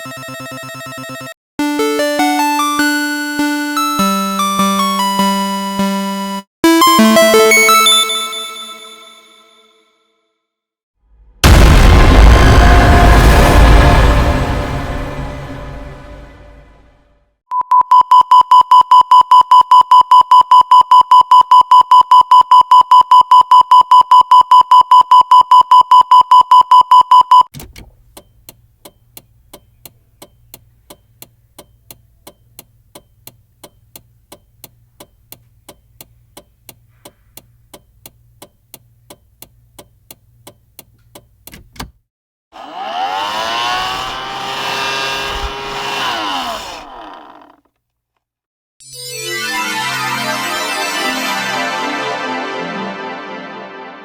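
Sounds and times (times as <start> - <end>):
low hum: 43.3 - 47.4.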